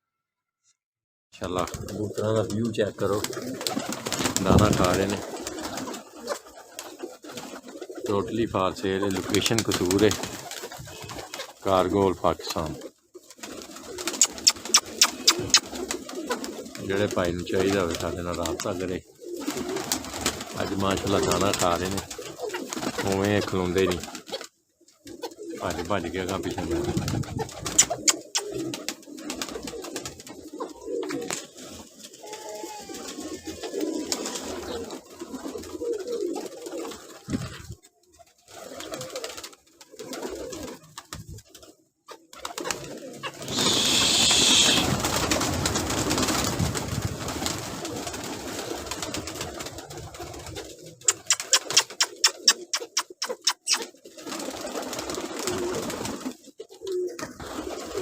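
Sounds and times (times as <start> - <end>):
pigeons cooing: 1.5 - 58.0
loud rustling: 43.0 - 49.1.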